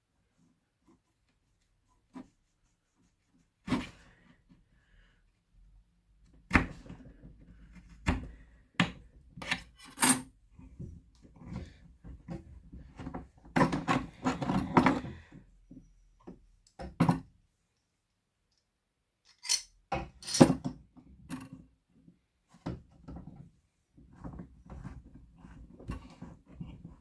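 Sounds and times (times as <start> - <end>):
metal and wood parts clinking: 19.3 - 20.5.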